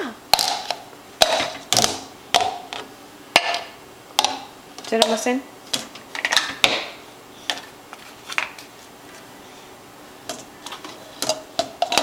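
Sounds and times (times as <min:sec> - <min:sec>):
dishes clicking and knocking: 0:10.3 - 0:12.0.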